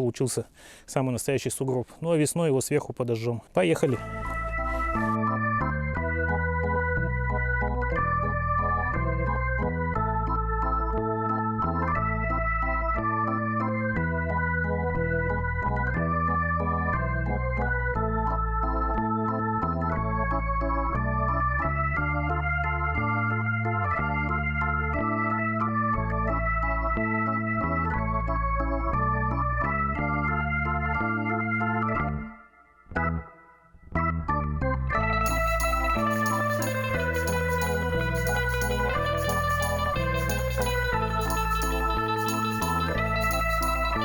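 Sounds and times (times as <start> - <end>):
stepping bass line: 3.8 - 13.2, 34.4 - 44.0
organ-like keyboard chords: 3.8 - 44.0.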